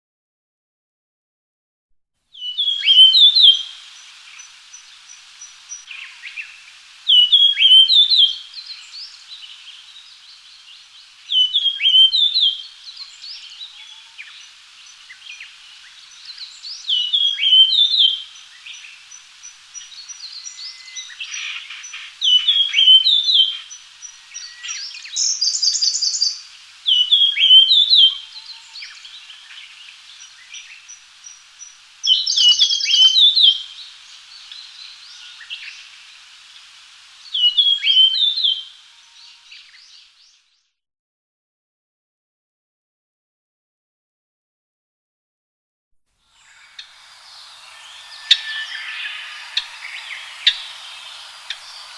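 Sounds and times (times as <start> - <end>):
bird singing whistled phrase: 2.4 - 3.8, 46.4 - 51.9
faint bird calls and ticks: 2.4 - 40.4, 46.4 - 51.9.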